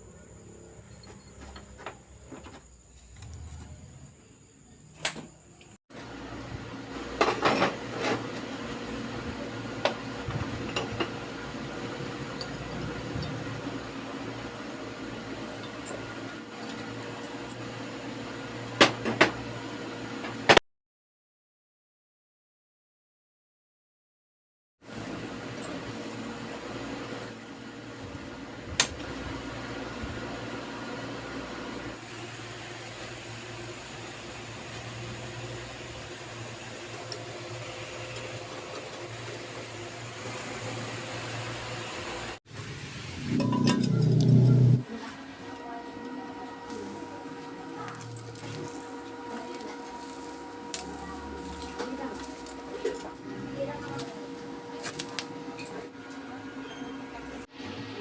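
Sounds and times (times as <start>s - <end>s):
small electric motor humming: 43.4s - 57.4s.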